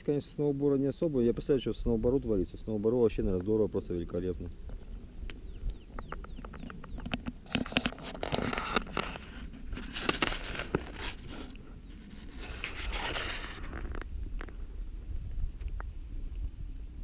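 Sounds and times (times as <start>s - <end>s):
rustling and scraping: 5.8s - 14.8s.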